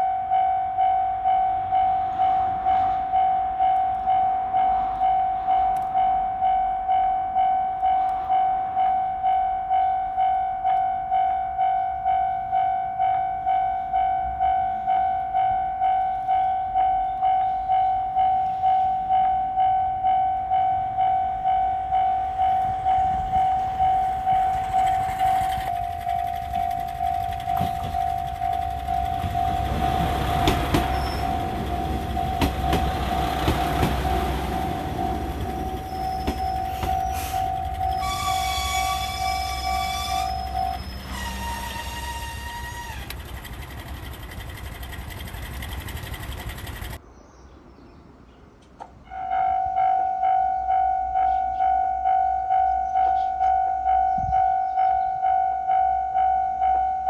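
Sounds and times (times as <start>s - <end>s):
level crossing warning bell ringing: 0.0s - 47.0s, 49.2s - 57.0s
diesel train passing: 0.0s - 47.1s
wheels clacking over rail joints: 20.5s - 47.0s.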